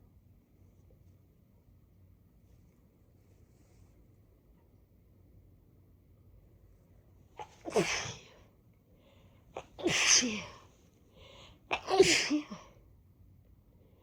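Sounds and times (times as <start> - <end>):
woman sneezing: 7.4 - 8.4, 9.6 - 10.7, 11.7 - 12.8.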